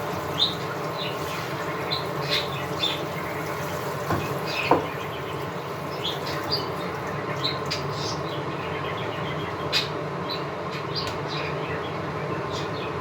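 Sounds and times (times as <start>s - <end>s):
kitchen background noise: 0.0s - 10.0s.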